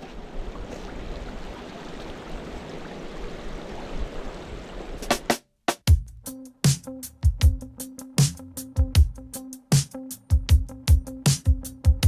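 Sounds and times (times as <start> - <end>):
electronic music beats: 5.8 - 12.0.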